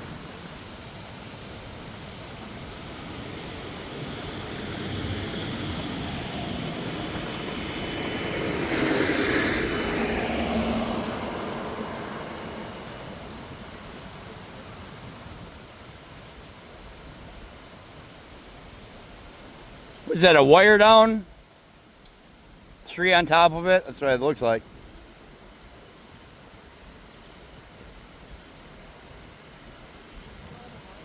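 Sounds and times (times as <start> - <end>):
road vehicle passing by: 0.1 - 15.4.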